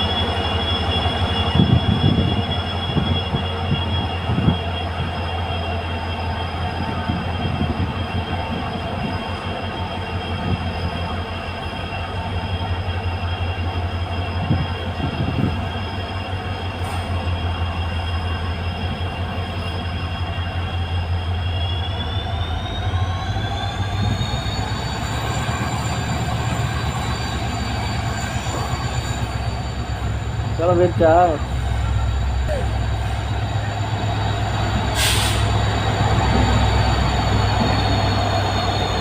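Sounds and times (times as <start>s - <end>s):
locomotive engine humming: 0.0s - 39.0s.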